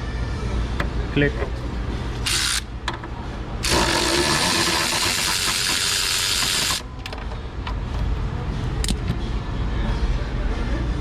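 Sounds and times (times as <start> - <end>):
ratchet wrench clicking: 2.2 - 2.7, 3.6 - 6.8.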